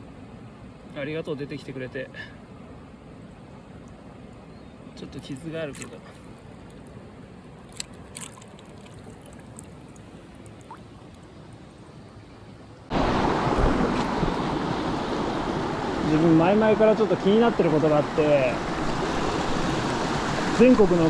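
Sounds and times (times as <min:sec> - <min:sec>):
stream water rushing: 0:05.2 - 0:21.0.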